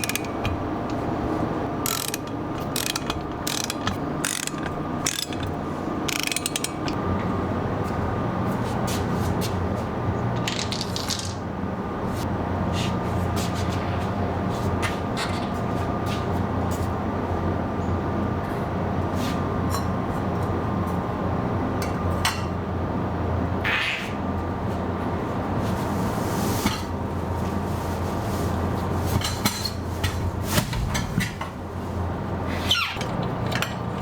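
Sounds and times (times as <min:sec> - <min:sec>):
hand tools clicking and ratcheting: 0:00.0 - 0:07.0.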